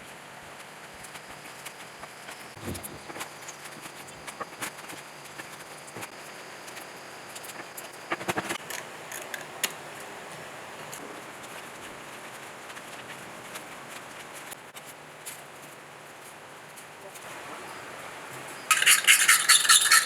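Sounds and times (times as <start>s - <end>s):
faint steady hiss: 0.0s - 19.0s
light clicks and scrapes: 18.4s - 20.0s.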